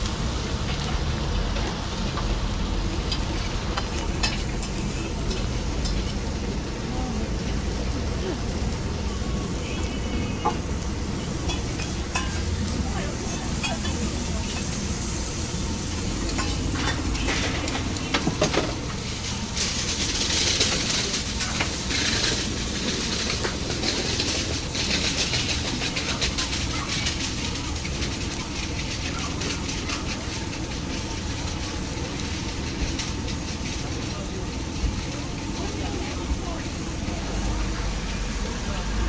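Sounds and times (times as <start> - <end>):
meat sizzling on a grill: 0.0 - 39.0.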